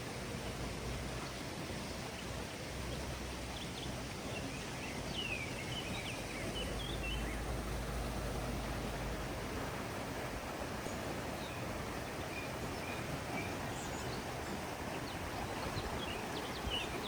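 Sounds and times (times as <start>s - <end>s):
steady rushing hiss: 0.0s - 17.0s
small songbirds chirping: 0.4s - 9.2s, 10.8s - 17.0s.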